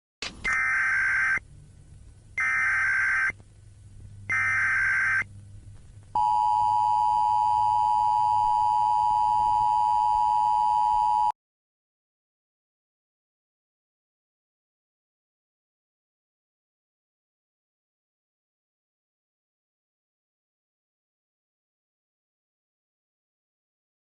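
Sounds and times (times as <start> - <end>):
buzzing data header bursts: 4.3 - 5.3.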